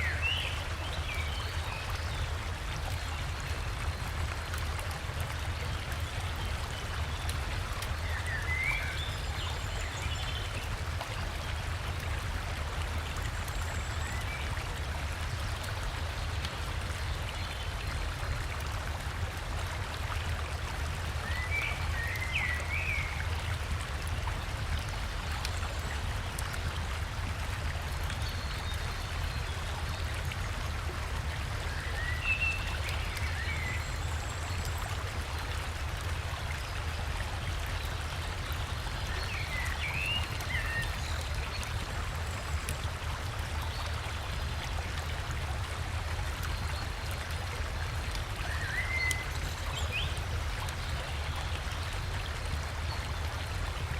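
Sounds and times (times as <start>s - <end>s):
small waterfall: 0.0s - 53.9s.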